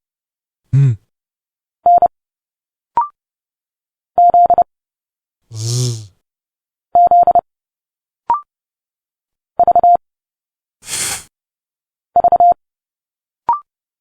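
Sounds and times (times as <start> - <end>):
person making hissed sound: 5.5 - 6.1, 10.8 - 11.3.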